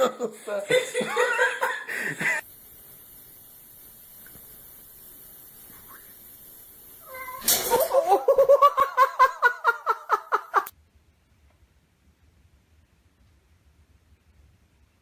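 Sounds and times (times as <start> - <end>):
cat caterwauling: 7.0 - 8.0.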